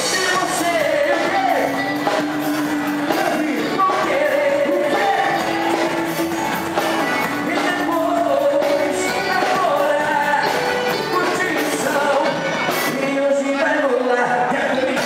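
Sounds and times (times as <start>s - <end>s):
sung ballad: 0.0s - 15.0s.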